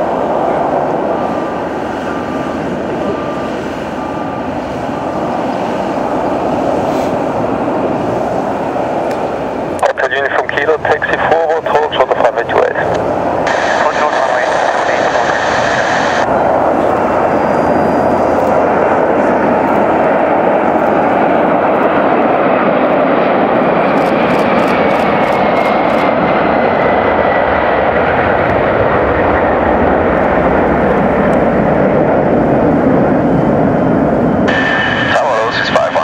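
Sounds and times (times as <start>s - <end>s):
jet engines roaring: 0.0s - 36.0s
faint whine: 0.3s - 21.6s, 32.3s - 36.0s.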